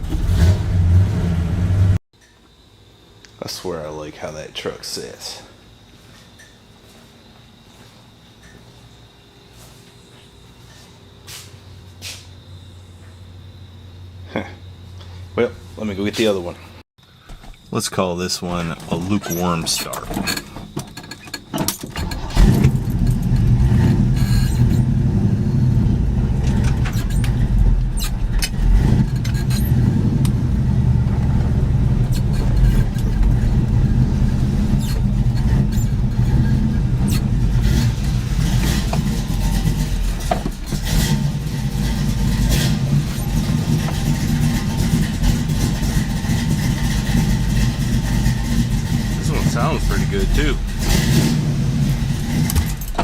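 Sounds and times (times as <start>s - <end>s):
engine cranking and idling: 18.6s - 53.0s.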